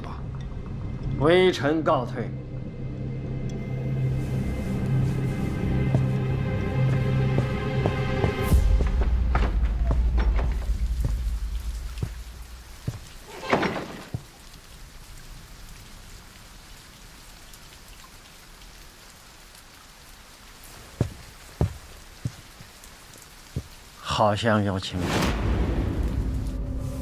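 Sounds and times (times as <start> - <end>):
steady rain: 3.6 - 27.0.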